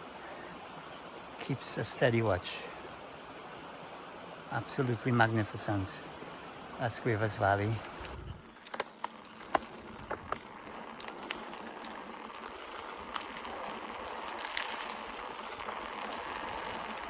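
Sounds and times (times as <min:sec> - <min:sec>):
insect trilling: 0:00.0 - 0:17.0
faint clicks: 0:07.8 - 0:17.0.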